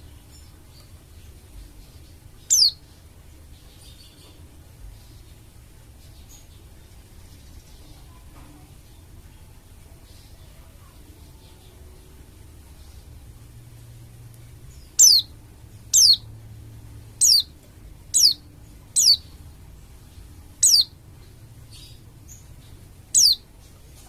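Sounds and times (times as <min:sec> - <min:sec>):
bird high sharp calls: 0:02.5 - 0:02.8, 0:15.0 - 0:15.3, 0:15.9 - 0:16.2, 0:17.2 - 0:17.5, 0:18.1 - 0:18.4, 0:19.0 - 0:19.3, 0:20.6 - 0:21.0, 0:23.1 - 0:23.4.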